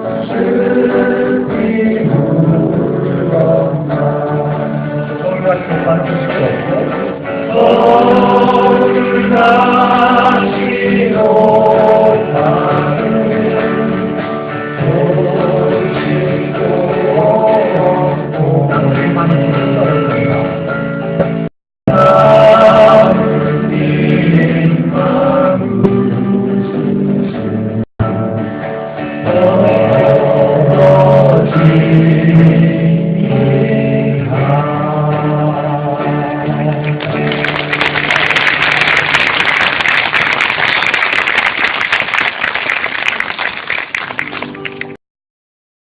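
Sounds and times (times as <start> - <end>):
voices singing in harmony: 0.0 - 20.5, 21.9 - 27.7, 29.1 - 37.1
acoustic guitar: 0.0 - 45.0.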